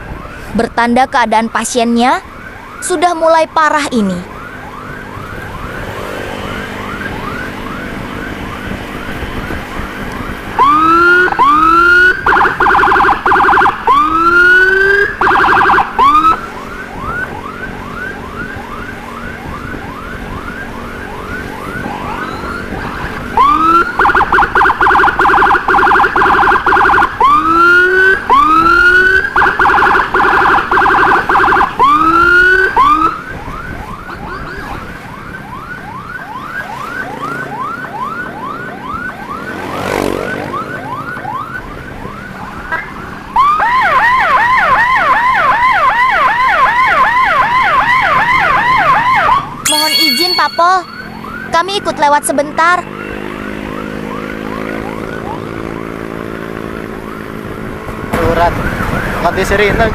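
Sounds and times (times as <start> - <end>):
louder siren whooping and warbling: 0.0 - 57.6, 58.2 - 59.9
ambulance siren yelp: 0.0 - 59.9.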